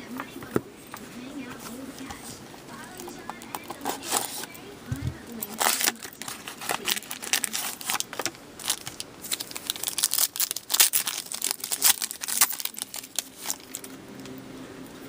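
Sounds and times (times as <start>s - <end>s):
card pack wrappers crinkling and tearing: 2.8s - 4.5s, 5.3s - 14.4s.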